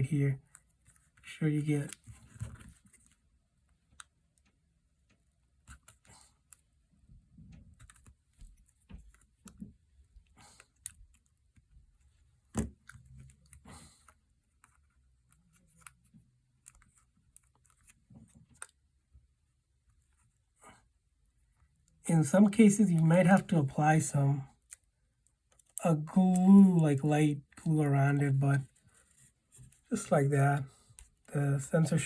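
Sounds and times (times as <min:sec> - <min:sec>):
small parts clicking and tapping: 0:24.6 - 0:25.8.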